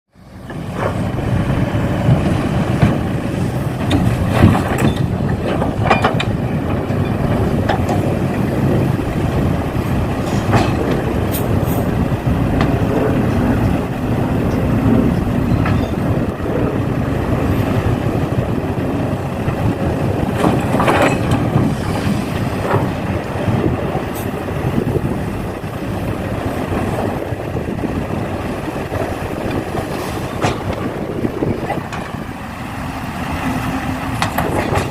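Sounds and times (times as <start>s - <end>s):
knocks and clatter: 2.0s - 8.6s, 10.2s - 11.9s, 19.4s - 21.9s, 29.4s - 31.0s, 34.2s - 34.9s.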